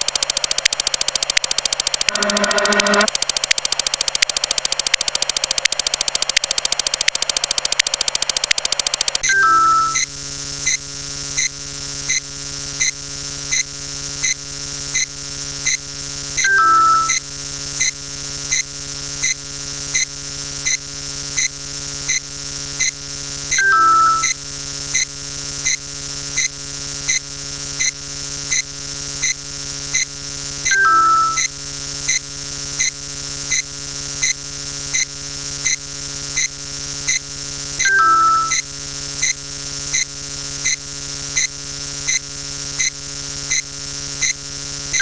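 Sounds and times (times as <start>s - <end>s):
electronic hum: 1.6s - 3.7s, 16.4s - 17.9s, 22.1s - 25.1s, 30.6s - 32.2s, 34.9s - 45.0s
falling two-note beep: 2.1s - 3.1s, 9.3s - 10.0s, 16.4s - 17.2s, 23.6s - 24.4s, 30.7s - 31.5s, 37.9s - 38.6s.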